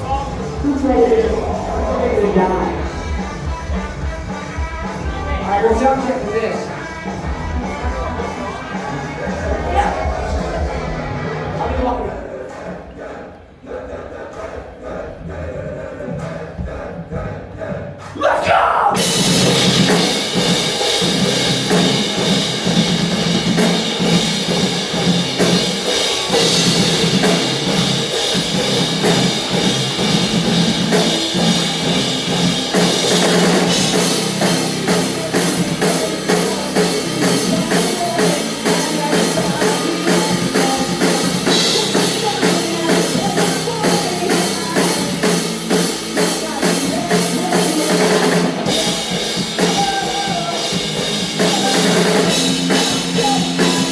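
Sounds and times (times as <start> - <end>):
live rock band playing: 0.0 - 11.6, 19.0 - 53.9.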